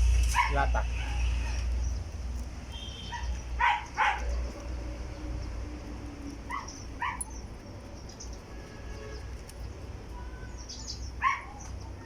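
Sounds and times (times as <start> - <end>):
dog barking: 0.3 - 1.6, 3.1 - 4.3, 6.5 - 7.3, 11.2 - 11.6.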